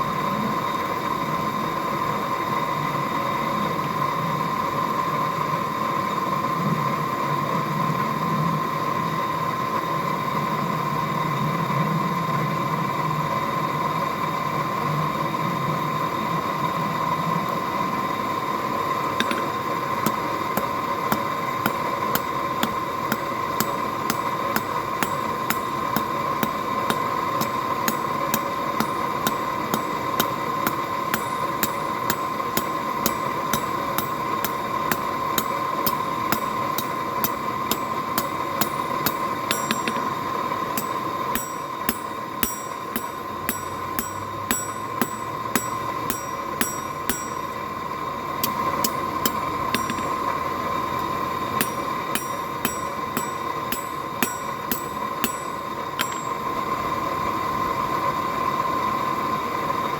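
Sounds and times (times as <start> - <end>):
constant high hum: 0.0 - 59.9
hammer striking steel on anvil: 19.2 - 56.7.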